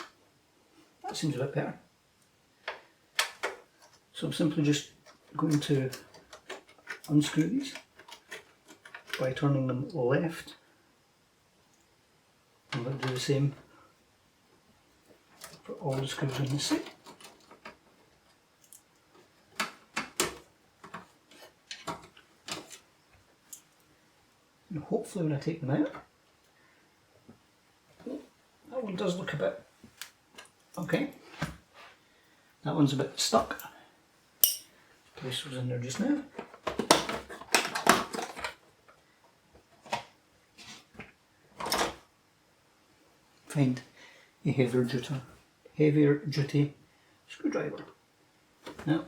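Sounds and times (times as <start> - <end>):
metal tools scraping and knocking: 34.4 - 34.7.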